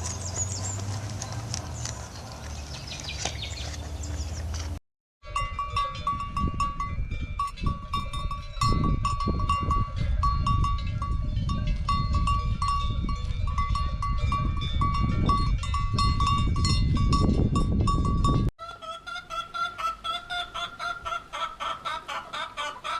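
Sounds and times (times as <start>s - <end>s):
goat bells clanking: 5.2s - 18.5s.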